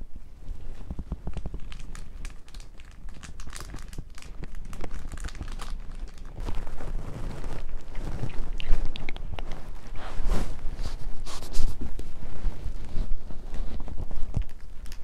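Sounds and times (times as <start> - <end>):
stomach gurgling: 0.8 - 9.9.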